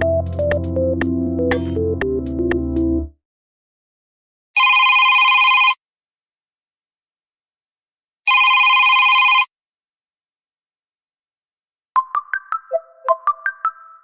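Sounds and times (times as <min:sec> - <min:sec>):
trilling telephone ringtone: 0:04.6 - 0:05.8, 0:08.3 - 0:09.5.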